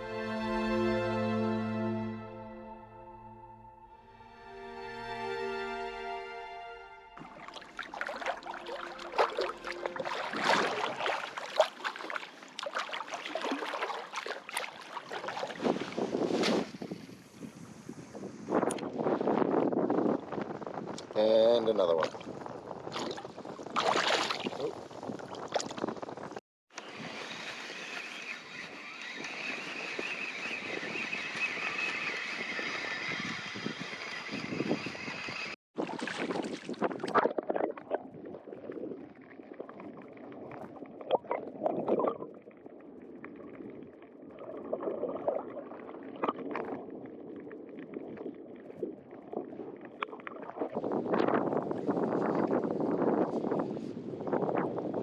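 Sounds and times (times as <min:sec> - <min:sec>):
shallow water moving: 0:07.1 - 0:17.6, 0:35.8 - 0:52.7
wind buffeting microphone: 0:15.3 - 0:26.4, 0:28.5 - 0:39.2, 0:50.4 - 0:55.0.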